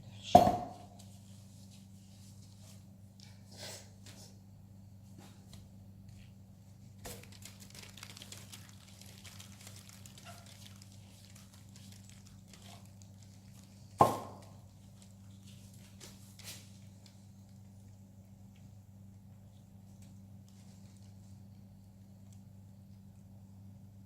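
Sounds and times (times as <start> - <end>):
steady electrical hum: 0.0 - 24.0
faint clicking and rustling: 7.0 - 14.0, 14.6 - 23.3.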